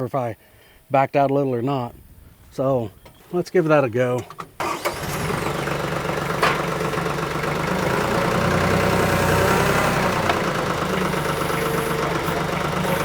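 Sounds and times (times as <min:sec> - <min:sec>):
tractor diesel engine running: 0:04.3 - 0:13.0.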